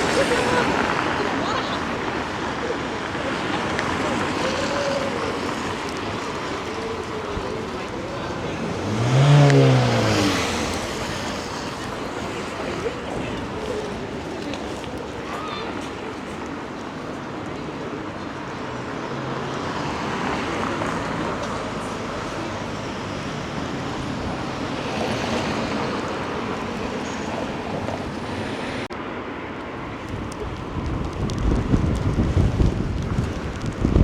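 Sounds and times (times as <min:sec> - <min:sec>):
tyres hissing on wet street: 0:00.0 - 0:34.0
wind buffeting microphone: 0:29.6 - 0:34.0.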